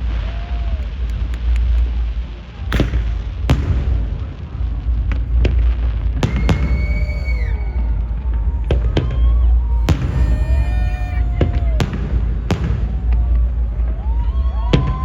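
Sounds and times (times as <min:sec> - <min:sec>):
fireworks booming: 0:05.0 - 0:07.5, 0:09.8 - 0:13.4
sharp firework cracks: 0:06.2 - 0:07.5
falling whistle tones: 0:06.2 - 0:07.8, 0:09.7 - 0:11.8.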